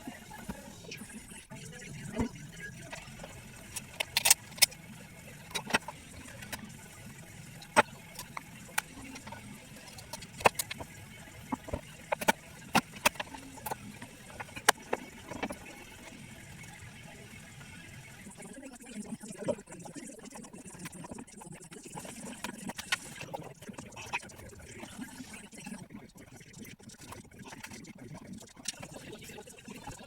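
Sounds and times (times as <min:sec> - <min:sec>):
tools and metal parts clicking: 0:03.7 - 0:04.8.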